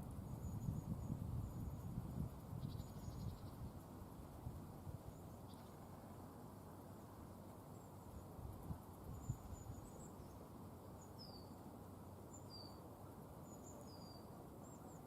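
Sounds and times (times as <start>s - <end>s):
low rumble of background noise: 0.0s - 15.0s
small birds chirping: 0.3s - 3.9s, 5.1s - 6.0s, 7.6s - 15.0s.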